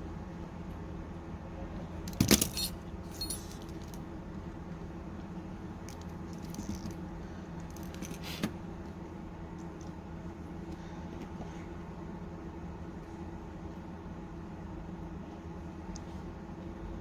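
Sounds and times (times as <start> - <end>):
steady low hum: 0.0 - 17.0
small metal tools clinking: 2.1 - 4.0.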